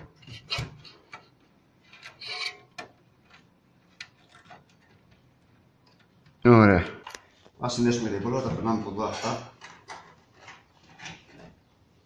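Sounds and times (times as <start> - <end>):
cable rustling scrape: 8.7 - 11.7.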